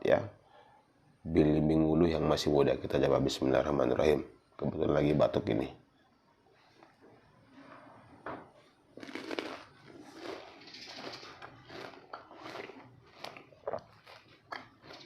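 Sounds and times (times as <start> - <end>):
person crunching fruit: 9.0 - 15.0.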